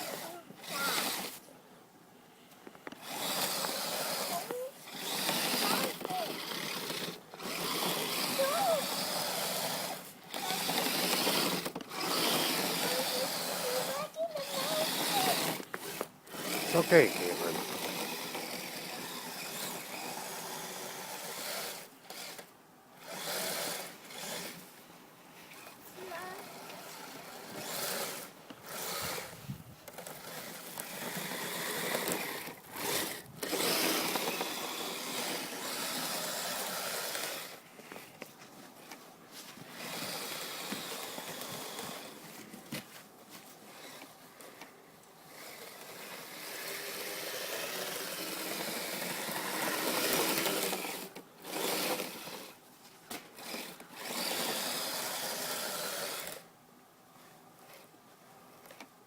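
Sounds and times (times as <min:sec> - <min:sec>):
electric motor and gears whining: 0:00.0 - 0:01.4, 0:02.9 - 0:24.6, 0:25.6 - 0:37.6, 0:39.6 - 0:42.5, 0:45.2 - 0:52.6, 0:53.4 - 0:56.5.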